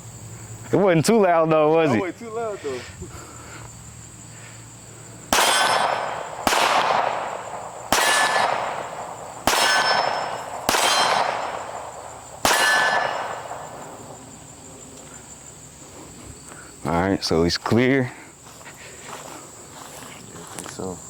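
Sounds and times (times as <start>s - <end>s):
pistol shots with ringing tail: 5.3s - 14.4s.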